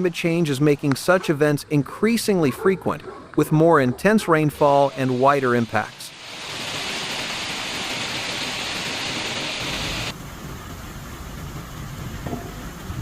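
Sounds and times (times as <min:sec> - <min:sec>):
heavy rain hissing: 0:04.3 - 0:13.0
low rumbling noise: 0:06.1 - 0:13.0.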